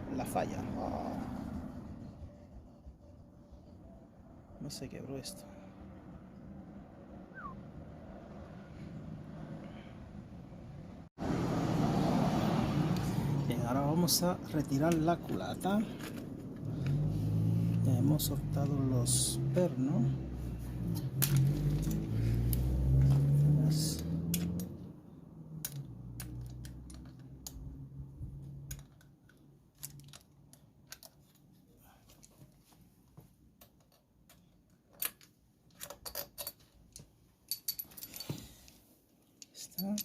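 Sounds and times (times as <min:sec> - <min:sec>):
metallic clinks from tools: 0:37.5 - 0:38.7, 0:39.4 - 0:40.0.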